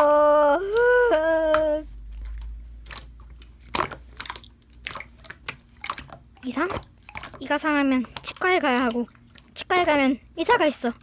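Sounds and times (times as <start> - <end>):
person humming: 0.0 - 1.9.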